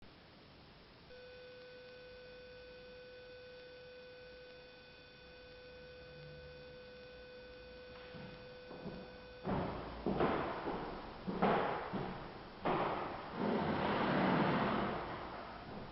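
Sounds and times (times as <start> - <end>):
faint steady tone: 0.0 - 9.8.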